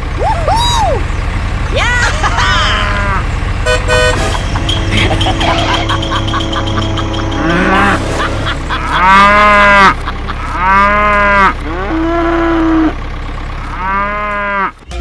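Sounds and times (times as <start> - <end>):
steady low hum: 0.0 - 15.0
cattle mooing: 2.3 - 3.3, 4.6 - 14.8.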